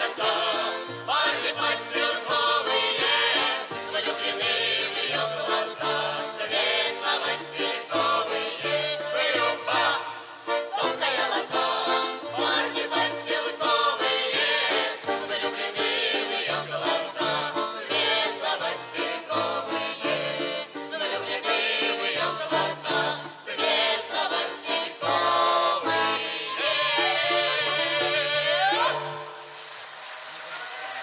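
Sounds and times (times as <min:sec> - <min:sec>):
folk ensemble music: 0:00.0 - 0:30.9.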